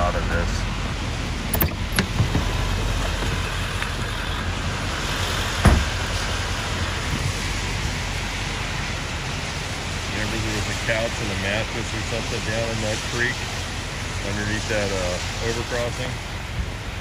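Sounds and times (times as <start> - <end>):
heavy rain: 0.0 - 17.0
wind: 0.0 - 17.0
sharp thump: 5.6 - 5.9.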